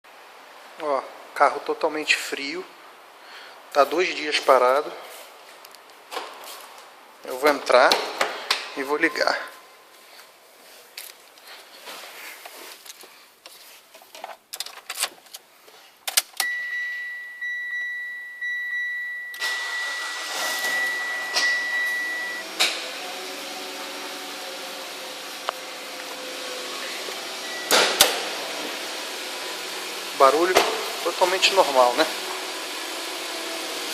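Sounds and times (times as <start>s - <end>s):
high electronic beep tone: 16.4s - 22.5s, 27.4s - 28.0s
car engine starting and idling: 19.3s - 33.9s.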